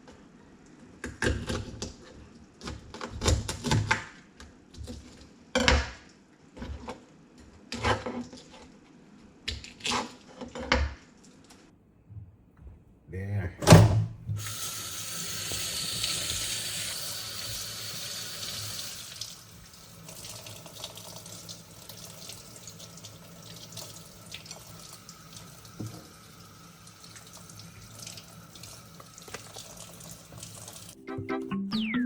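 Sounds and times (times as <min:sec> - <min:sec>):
tap water running into sink: 0:14.3 - 0:31.0
music: 0:31.0 - 0:32.0.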